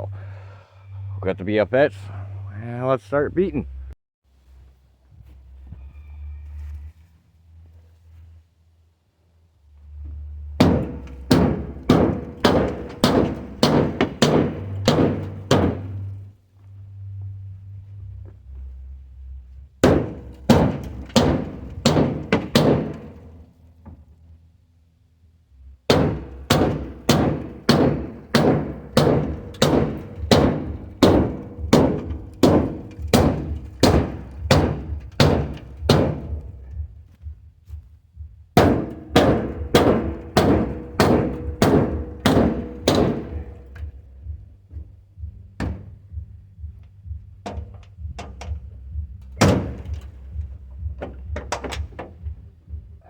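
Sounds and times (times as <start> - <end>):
sledgehammer striking metal: 10.6 - 16.3, 19.8 - 23.5, 25.9 - 36.8, 38.6 - 44.4, 49.2 - 52.3.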